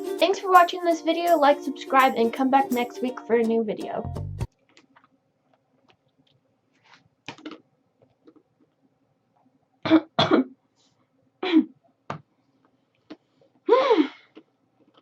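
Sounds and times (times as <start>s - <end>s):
person clearing throat: 9.8s - 10.6s, 11.4s - 11.8s
person coughing: 9.8s - 10.6s, 11.4s - 11.8s.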